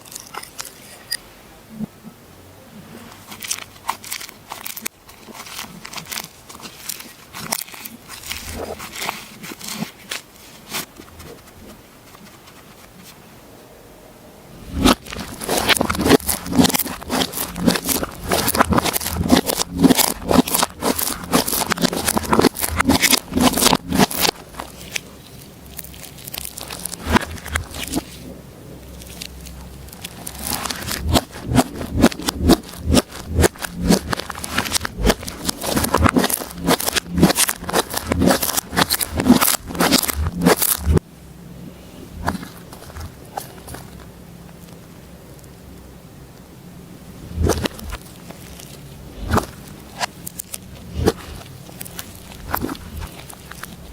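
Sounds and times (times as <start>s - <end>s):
slime squishing and crackling: 3.2s - 11.7s, 14.6s - 41.0s, 47.2s - 53.9s.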